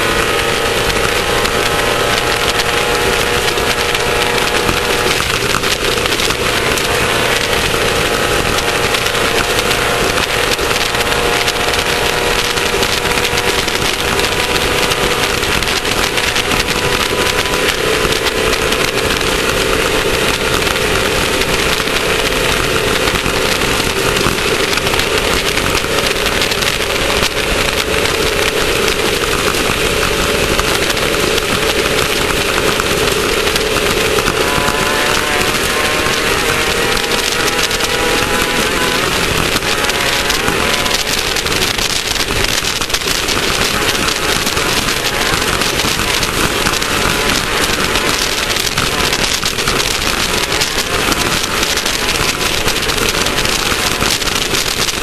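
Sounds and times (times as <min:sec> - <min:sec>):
car rattling and knocking: 0:00.0 - 0:55.0
race car engine running hard: 0:00.0 - 0:55.0.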